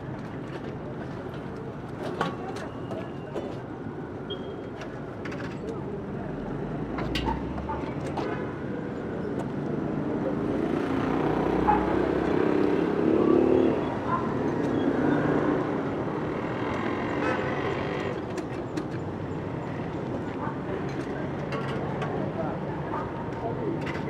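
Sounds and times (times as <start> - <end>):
murmur of people talking: 0.7 - 14.4, 19.5 - 24.0.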